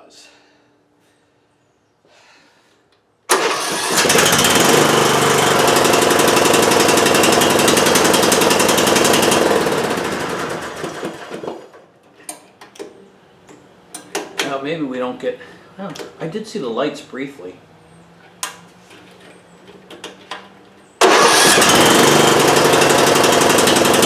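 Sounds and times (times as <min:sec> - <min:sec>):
engine cranking and running: 0:03.3 - 0:11.8, 0:21.0 - 0:24.0.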